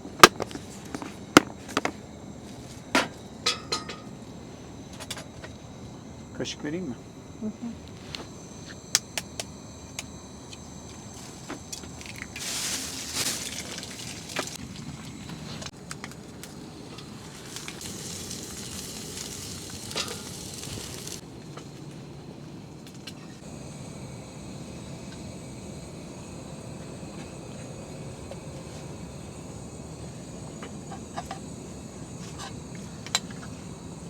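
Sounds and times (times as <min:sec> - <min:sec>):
steady hissing: 0:09.3 - 0:21.2, 0:23.1 - 0:34.0.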